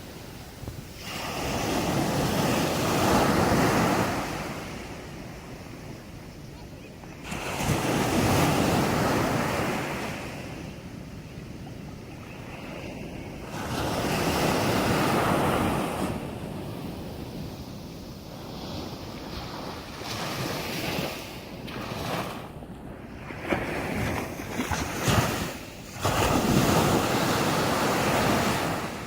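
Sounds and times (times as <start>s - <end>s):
sea waves breaking on beach: 0.0s - 29.0s.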